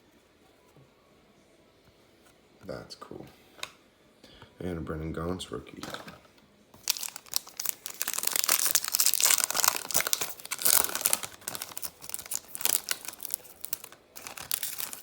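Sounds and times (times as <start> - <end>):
wrapper tearing and crinkling: 6.8 - 15.0.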